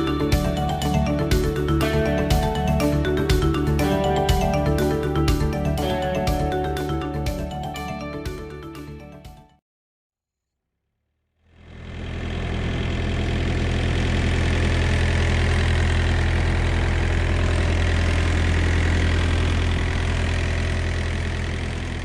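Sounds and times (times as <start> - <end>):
diesel refrigeration unit idling: 11.7 - 22.0.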